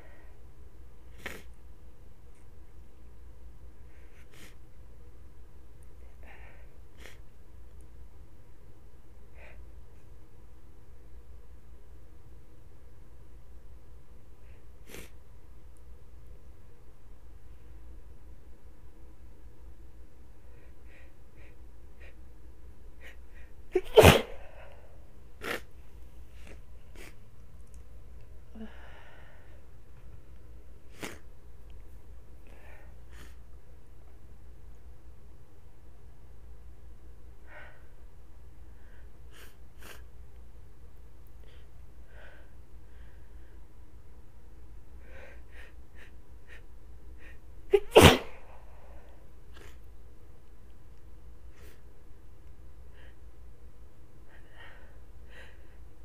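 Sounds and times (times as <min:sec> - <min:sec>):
woman sneezing: 0:23.8 - 0:24.6, 0:47.7 - 0:48.5.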